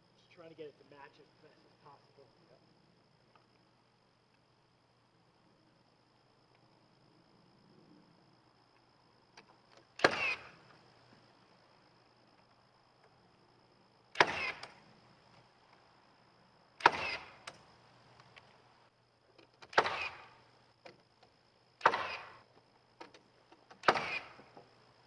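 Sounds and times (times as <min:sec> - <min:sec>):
pneumatic nail gun firing into wood: 0:10.0 - 0:10.7, 0:14.1 - 0:14.8, 0:16.8 - 0:17.6, 0:19.6 - 0:20.4, 0:21.8 - 0:22.4, 0:23.7 - 0:24.6.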